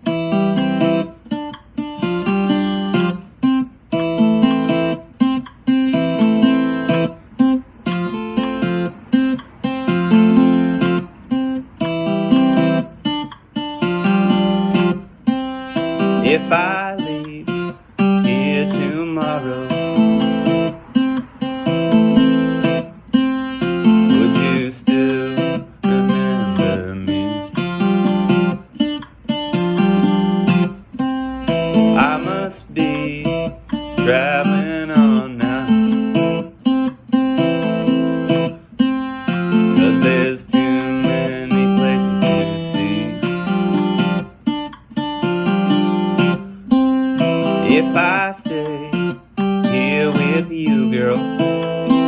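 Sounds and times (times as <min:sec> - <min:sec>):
guitar slide: 0:00.0 - 0:52.0
guitar strumming chords: 0:00.0 - 0:52.0.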